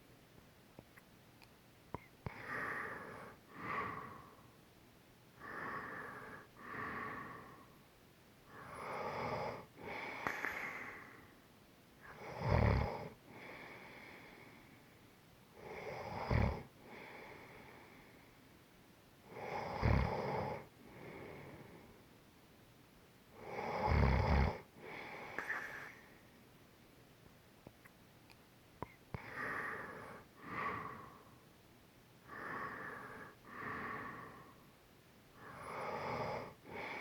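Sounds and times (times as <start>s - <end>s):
person snoring: 12.0s - 13.8s, 15.6s - 17.4s, 19.3s - 21.8s, 23.4s - 26.0s.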